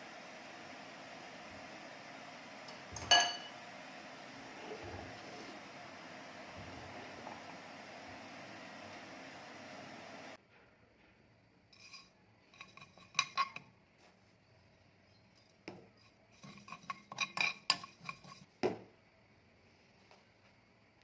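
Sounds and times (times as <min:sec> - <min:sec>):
metal spoon clinking a dish: 0:03.0 - 0:03.5, 0:11.8 - 0:13.7, 0:16.0 - 0:18.5.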